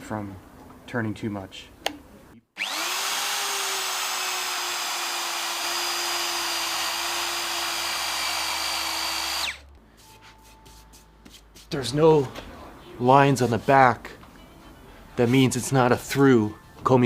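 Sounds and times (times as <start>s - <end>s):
electric mortiser whining: 2.6s - 9.7s.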